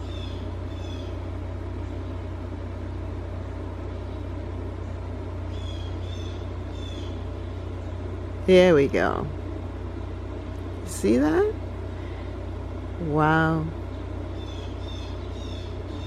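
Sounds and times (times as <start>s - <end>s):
small bird chirping: 0.0s - 1.2s, 4.0s - 8.0s, 14.0s - 16.0s
distant traffic rumble: 0.0s - 16.0s.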